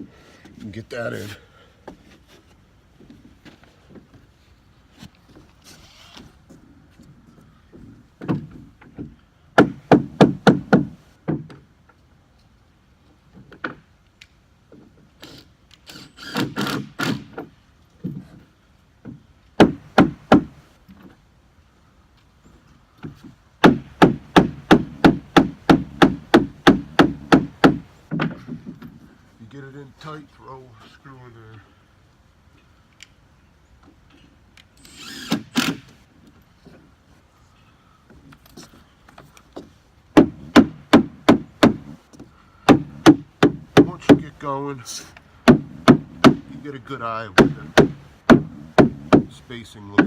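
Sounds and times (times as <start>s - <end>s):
rubber mallet knocking deck board: 23.6s - 28.5s, 42.7s - 44.2s, 45.5s - 46.5s, 47.4s - 49.3s.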